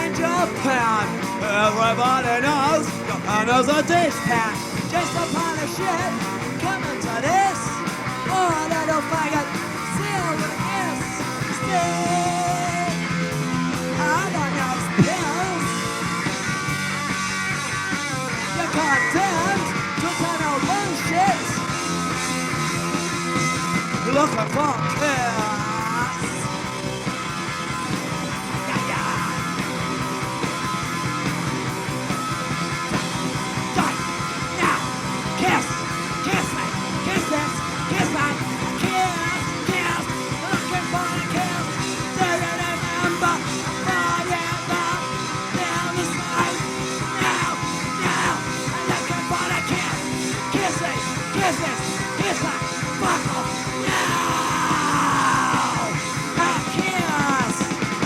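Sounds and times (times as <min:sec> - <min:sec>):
punk rock band playing: 0:00.0 - 0:58.0
guitar sliding down in pitch: 0:25.4 - 0:58.0.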